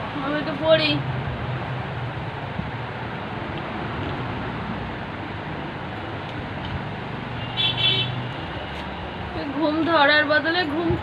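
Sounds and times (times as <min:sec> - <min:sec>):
road traffic: 0:00.0 - 0:11.0
vehicle horn toot: 0:07.4 - 0:08.3.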